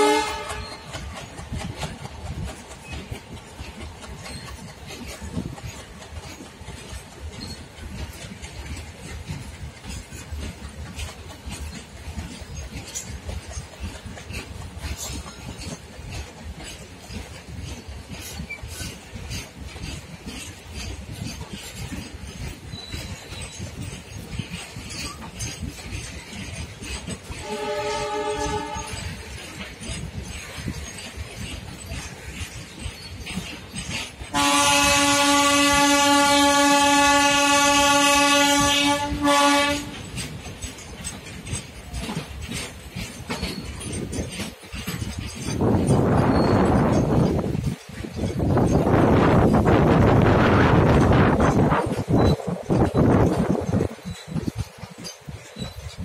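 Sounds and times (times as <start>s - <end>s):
locomotive horn blasts: 0.0s - 1.0s, 27.4s - 29.1s, 34.3s - 40.0s
low rumble of wagons: 0.0s - 56.0s
wheels clicking over rail joints: 0.0s - 56.0s.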